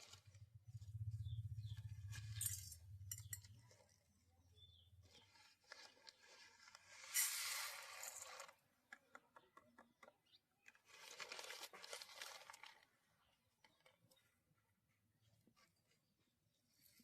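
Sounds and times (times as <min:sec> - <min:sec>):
rustling and crinkling handling noise: 0:00.0 - 0:02.9, 0:04.9 - 0:08.7, 0:10.6 - 0:14.6, 0:15.2 - 0:17.0.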